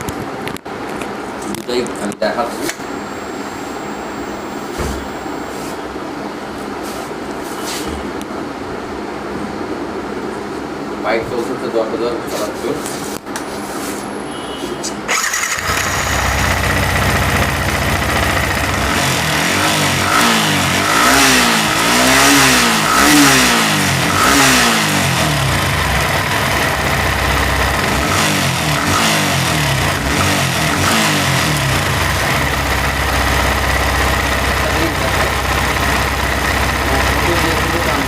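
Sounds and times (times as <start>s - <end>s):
motorcycle engine idling and revving: 15.1s - 38.0s.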